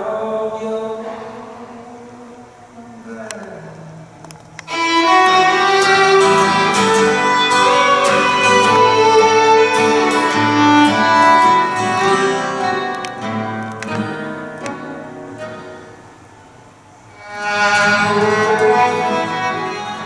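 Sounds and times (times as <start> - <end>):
guitar and plucked strings: 4.3 - 20.0
violin playing melody: 4.7 - 16.0, 17.1 - 20.0.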